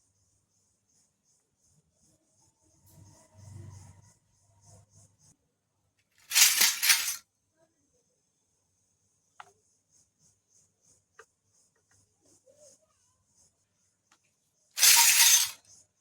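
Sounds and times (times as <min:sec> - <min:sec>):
light clicks of pieces set down: 0:06.3 - 0:07.2
toy kitchen pieces rattling: 0:06.3 - 0:07.2, 0:14.8 - 0:15.6.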